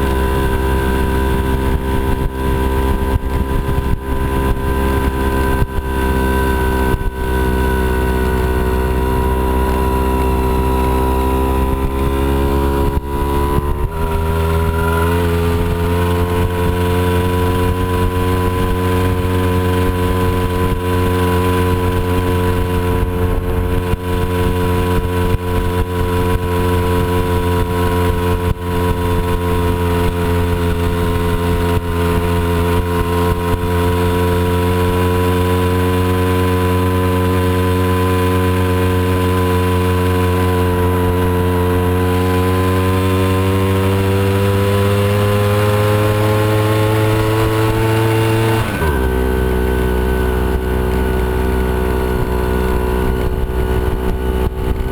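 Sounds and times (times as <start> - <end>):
moped engine running: 0.0 - 54.9.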